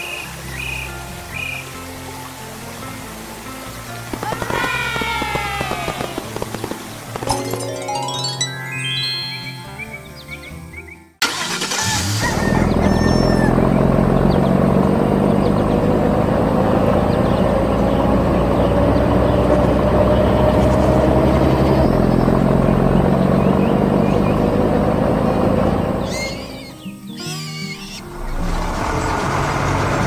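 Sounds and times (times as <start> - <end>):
heavy vehicle engine rumbling: 11.2 - 26.6, 28.1 - 30.0.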